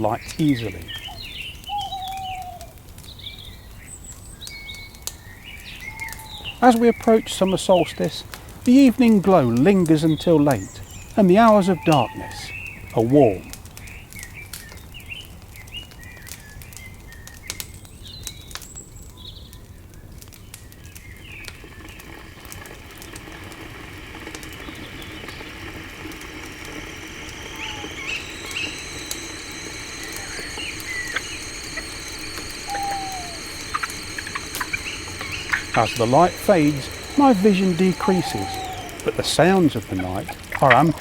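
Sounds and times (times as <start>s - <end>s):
high insect trill: 0.0s - 2.7s, 8.7s - 13.5s, 23.3s - 41.0s
bird chirps: 0.0s - 8.1s, 8.8s - 14.0s, 24.6s - 41.0s
campfire crackling and popping: 0.0s - 19.3s, 19.9s - 41.0s.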